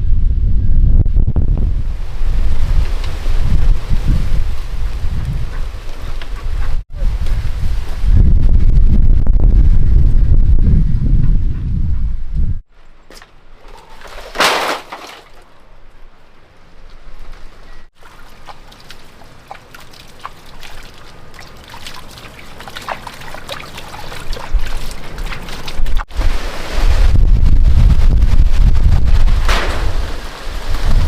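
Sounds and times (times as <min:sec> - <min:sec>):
water trickling and splashing: 0:13.6 - 0:15.7, 0:17.9 - 0:27.0.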